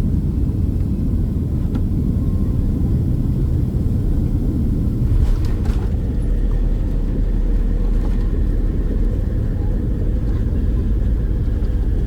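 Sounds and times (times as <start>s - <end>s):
airliner cabin engine rumble: 0.0s - 12.0s.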